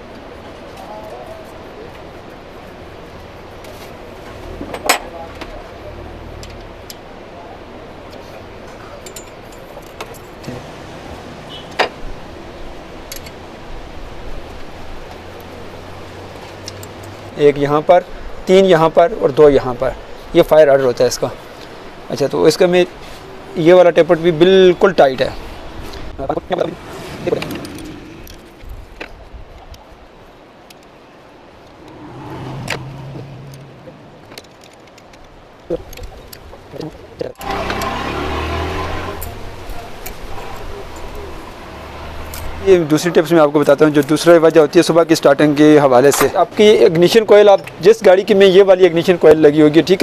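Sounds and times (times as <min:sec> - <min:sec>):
metallic clicks of hand tools: 0:16.6 - 0:17.2.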